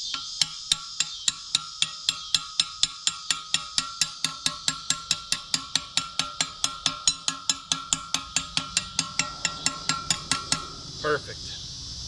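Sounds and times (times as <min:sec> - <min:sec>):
hammer tapping metal: 0:00.0 - 0:11.0.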